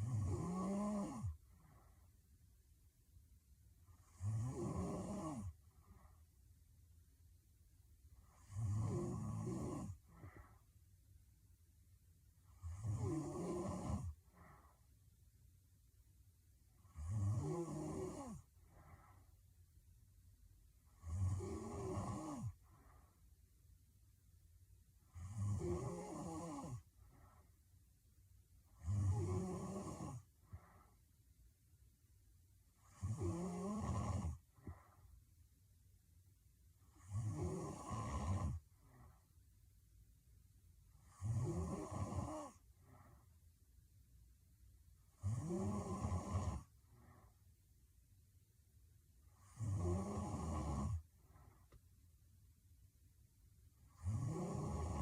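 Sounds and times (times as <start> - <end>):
girl snoring: 0.0 - 1.4, 4.0 - 5.6, 8.2 - 10.5, 12.5 - 14.7, 16.8 - 18.8, 21.0 - 22.6, 25.1 - 26.9, 28.8 - 30.3, 32.8 - 34.8, 36.9 - 38.6, 41.0 - 42.6, 45.1 - 46.7, 49.4 - 51.1, 53.9 - 55.0.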